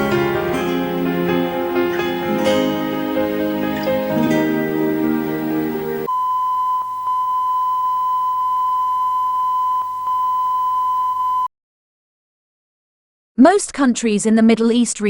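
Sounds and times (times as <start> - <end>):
music: 0.0 - 6.1
steady beep tone: 4.8 - 11.5.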